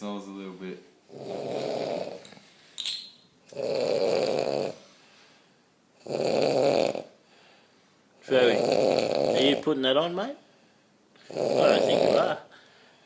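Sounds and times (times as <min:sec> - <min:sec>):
man snoring: 0:01.1 - 0:02.2, 0:03.5 - 0:04.8, 0:06.0 - 0:07.2, 0:08.4 - 0:09.6, 0:11.3 - 0:12.5.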